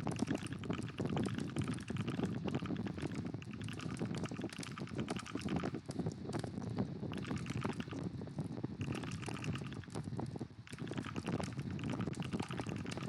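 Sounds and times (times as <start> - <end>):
mechanical keyboard typing: 10.8 - 13.0.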